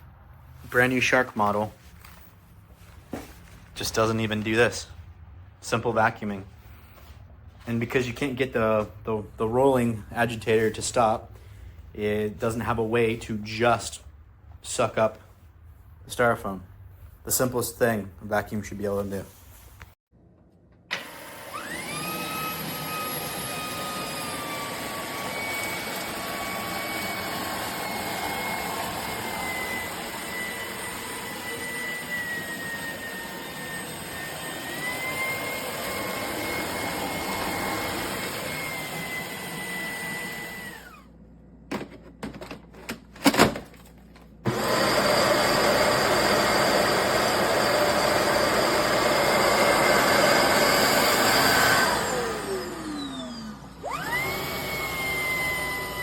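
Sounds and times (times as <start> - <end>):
stick vacuum motor whine: 20.9 - 41.1, 44.4 - 56.0.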